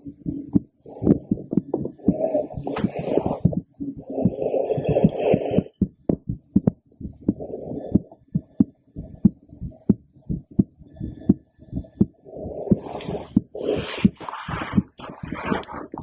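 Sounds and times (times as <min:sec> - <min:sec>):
heartbeat thumps: 0:00.0 - 0:16.0
rustling noise: 0:01.7 - 0:03.6, 0:12.8 - 0:16.0.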